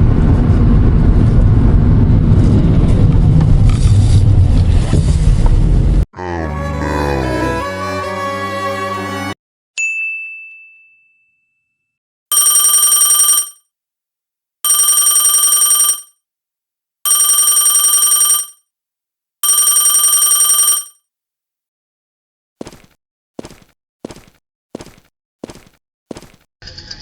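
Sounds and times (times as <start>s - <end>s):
telephone ringing: 12.3s - 13.6s, 14.7s - 16.2s, 17.1s - 18.6s, 19.4s - 21.0s.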